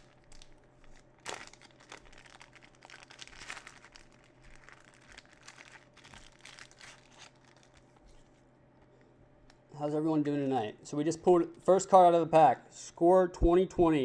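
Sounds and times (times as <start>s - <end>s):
thin plastic crinkling: 0.0s - 8.4s.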